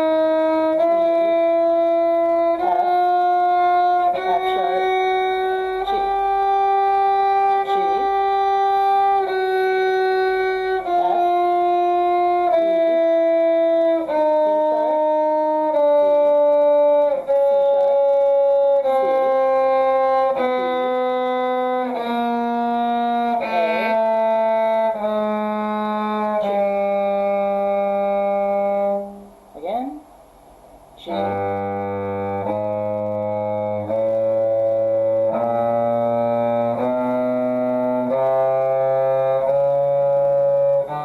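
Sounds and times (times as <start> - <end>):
bowed string instrument scale: 0.0 - 29.9, 31.0 - 41.0.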